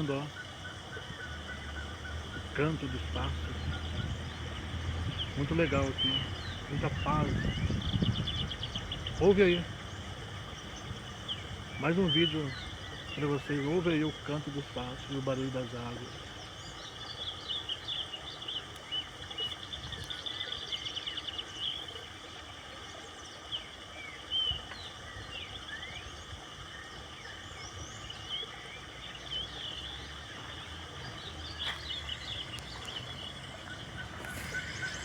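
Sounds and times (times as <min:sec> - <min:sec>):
bird trill: 0:00.0 - 0:22.0, 0:29.2 - 0:35.0
birds chirping and whistling: 0:00.0 - 0:22.0, 0:27.3 - 0:35.0
running water hiss: 0:00.0 - 0:35.0.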